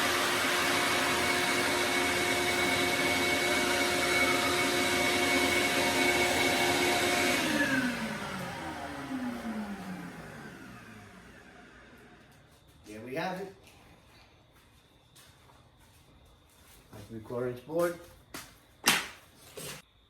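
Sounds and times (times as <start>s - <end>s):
electric saw motor running: 0.0s - 12.4s
saw spinning down with falling whine: 0.0s - 12.4s.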